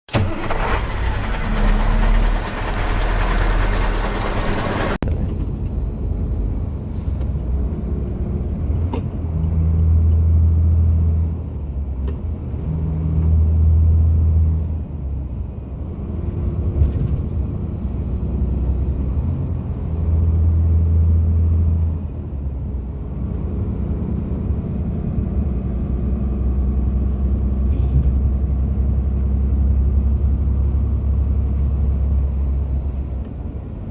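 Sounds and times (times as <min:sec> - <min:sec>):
heavy truck engine rumble: 0:00.1 - 0:33.9.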